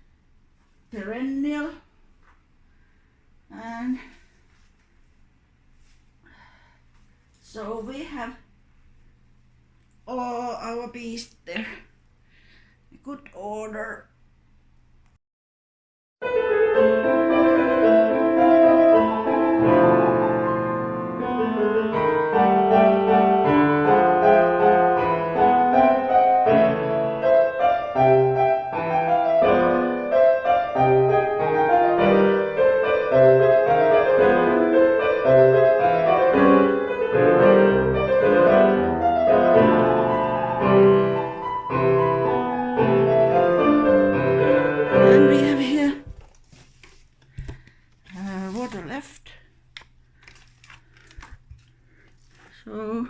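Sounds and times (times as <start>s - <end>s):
piano music: 16.2s - 46.1s.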